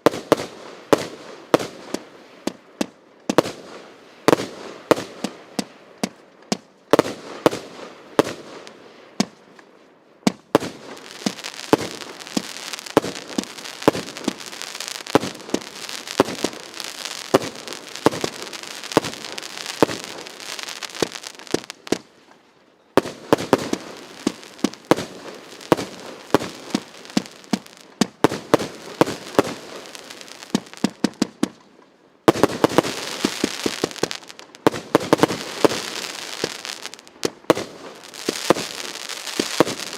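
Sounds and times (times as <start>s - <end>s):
firework shots and bursts: 0.0s - 9.4s, 10.3s - 22.2s, 23.0s - 31.6s, 32.3s - 39.9s
hissing crackle: 10.8s - 22.5s, 23.1s - 31.3s, 32.3s - 39.9s.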